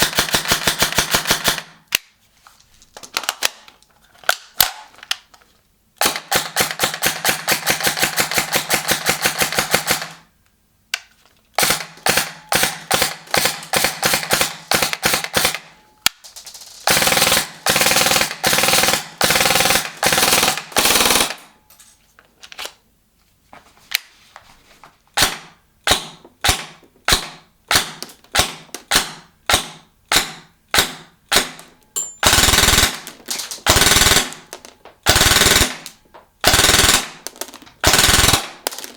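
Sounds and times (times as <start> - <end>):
airsoft gun firing: 0.0 - 1.8, 6.0 - 10.2, 11.6 - 15.8, 16.8 - 21.4, 25.2 - 38.9.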